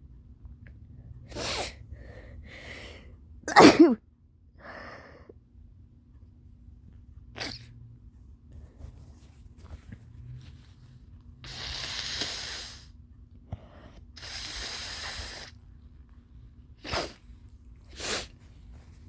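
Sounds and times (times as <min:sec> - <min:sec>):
breathy inhales: 0:01.5 - 0:03.2
woman sneezing: 0:03.5 - 0:04.0.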